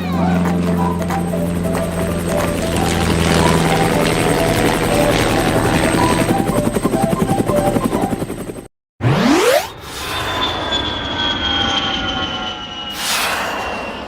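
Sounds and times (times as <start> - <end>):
rising whoosh: 9.0 - 14.0.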